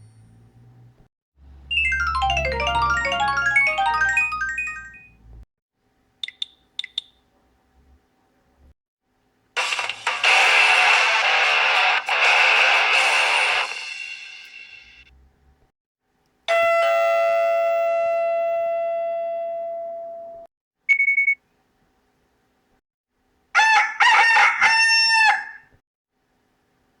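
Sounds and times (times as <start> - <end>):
bell-like chime: 1.7 - 5.1.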